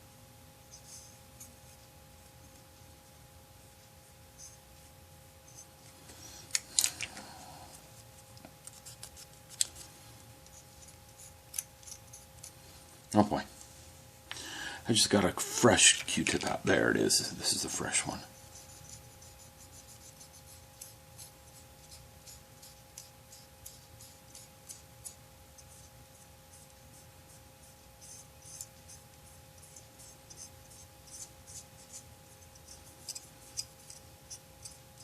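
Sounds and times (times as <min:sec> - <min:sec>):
faint two-tone whine: 0:00.0 - 0:35.0
cotton swab scratching plastic: 0:08.0 - 0:12.6, 0:18.4 - 0:35.0.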